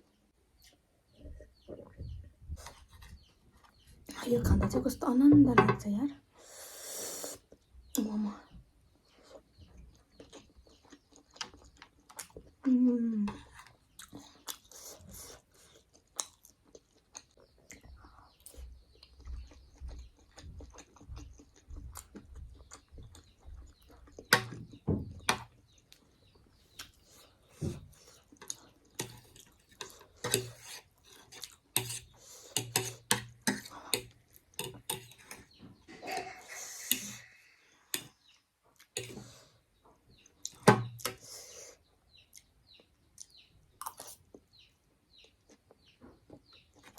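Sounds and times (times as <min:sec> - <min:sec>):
person chewing: 0:09.2 - 0:12.6, 0:13.5 - 0:24.6, 0:25.4 - 0:37.3, 0:38.0 - 0:39.4, 0:43.2 - 0:44.5.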